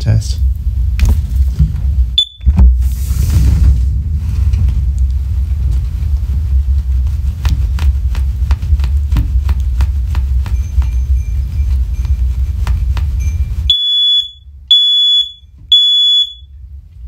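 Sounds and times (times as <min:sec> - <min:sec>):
low rumble: 0:00.0 - 0:15.8
smoke alarm test tone: 0:02.2 - 0:02.5, 0:13.2 - 0:16.5.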